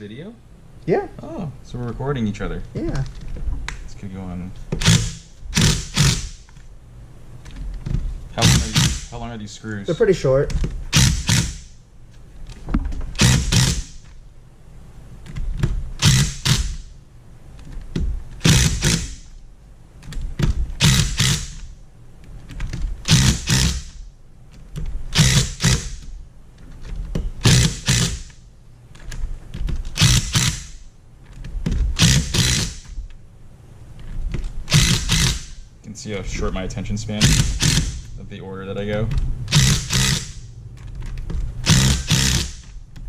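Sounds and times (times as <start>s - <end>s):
hand ratchet clicking: 4.8s - 6.6s, 8.4s - 9.2s, 10.6s - 11.7s, 13.2s - 14.1s, 15.2s - 16.9s, 17.6s - 19.3s, 20.0s - 21.7s, 22.5s - 24.0s, 24.8s - 26.1s, 27.4s - 28.4s, 29.0s - 33.0s, 34.3s - 35.6s, 37.2s - 38.1s, 39.1s - 43.0s.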